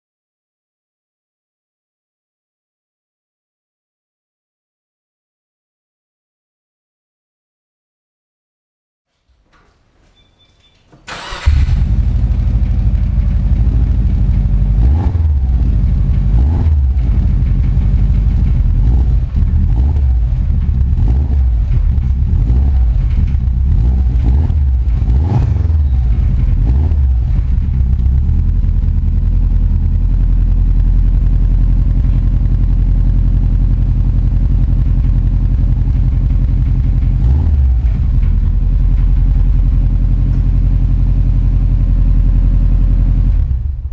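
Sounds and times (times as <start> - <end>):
car engine idling: 11.1 - 43.9
car engine starting and revving: 11.1 - 43.9.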